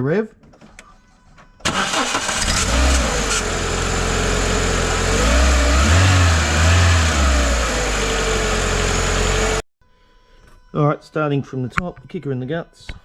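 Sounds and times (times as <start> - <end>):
car engine revving: 1.7 - 9.6.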